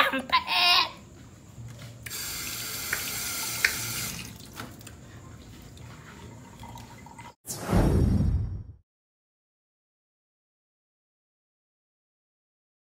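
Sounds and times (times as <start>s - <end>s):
tap water running into sink: 2.7s - 4.9s.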